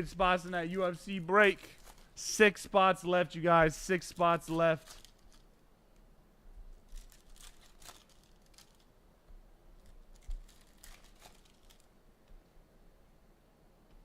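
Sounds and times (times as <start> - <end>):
card wrappers tearing and crinkling: 0.0 - 2.2, 3.9 - 5.5, 6.9 - 8.9, 10.1 - 11.9.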